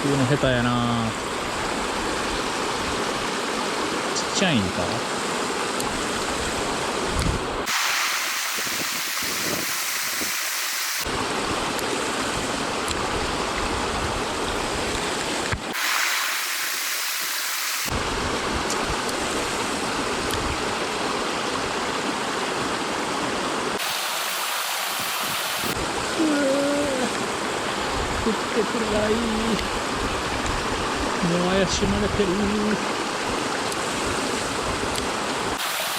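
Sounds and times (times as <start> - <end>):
mountain stream rushing: 0.0 - 35.9.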